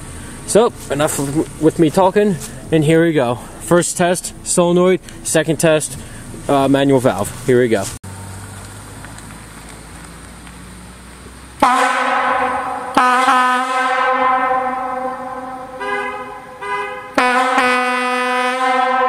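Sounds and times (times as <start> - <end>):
locomotive air horn blasts: 11.6 - 19.0.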